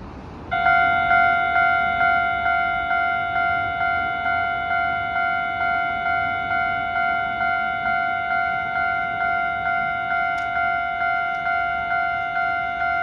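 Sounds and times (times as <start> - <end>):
level crossing warning bell ringing: 0.5 - 13.0.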